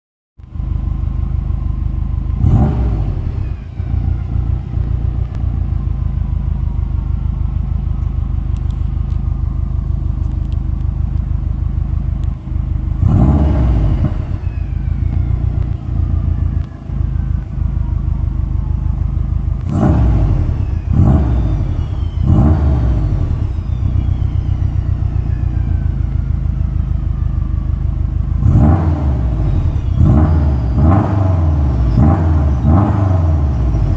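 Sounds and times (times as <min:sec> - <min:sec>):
car engine idling and blipping: 0:00.4 - 0:33.9
turbo whistle: 0:19.7 - 0:26.4, 0:28.5 - 0:33.8.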